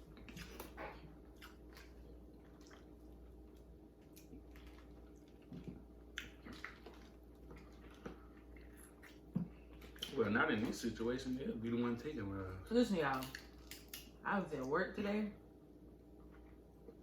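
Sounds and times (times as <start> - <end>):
crab shells and meat chewed: 0.0 - 10.2, 13.2 - 14.2.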